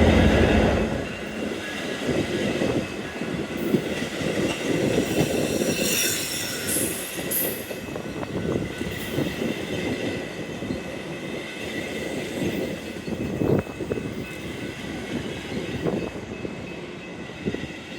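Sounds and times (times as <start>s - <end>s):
train wheels rumbling and clacking: 0.0s - 17.9s.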